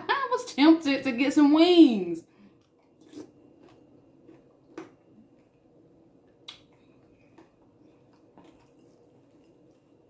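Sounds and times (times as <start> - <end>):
faint steady hum: 0.0 - 10.0
faint eating sounds: 2.2 - 10.0.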